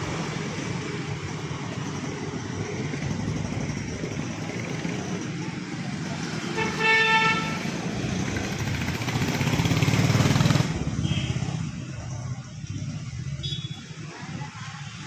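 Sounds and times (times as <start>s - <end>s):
motorbike engine running: 0.0s - 11.3s.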